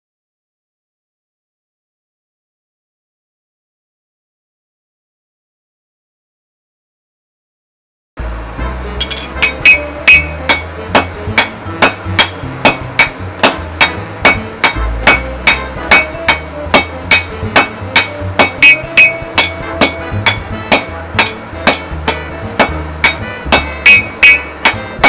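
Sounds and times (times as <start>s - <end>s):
background music: 8.2s - 25.0s
hammer striking steel on anvil: 9.0s - 25.0s.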